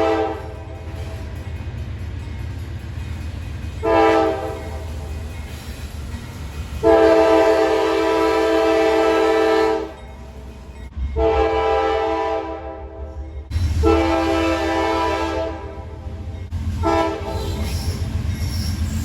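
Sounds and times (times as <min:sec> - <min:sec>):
locomotive air horn blasts: 0:00.0 - 0:00.7, 0:03.8 - 0:04.8, 0:06.8 - 0:10.0, 0:11.2 - 0:13.2, 0:13.8 - 0:16.0, 0:16.8 - 0:17.7
low train rumble: 0:00.0 - 0:19.0.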